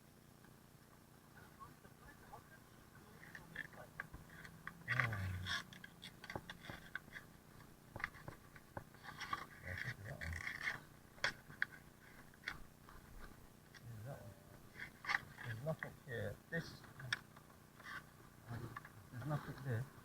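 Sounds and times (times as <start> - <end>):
low murmurs: 1.3 - 6.8, 9.2 - 10.8, 18.3 - 20.0.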